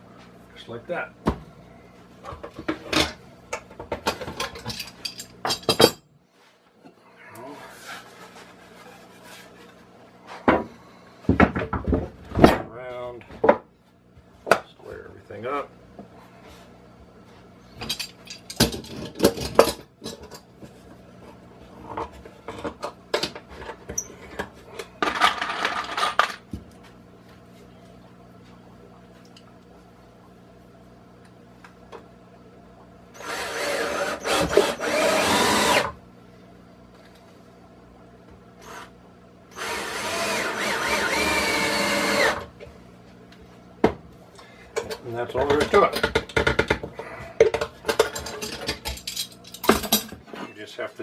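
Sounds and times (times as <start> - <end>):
rubbing scrape: 7.6 - 9.8.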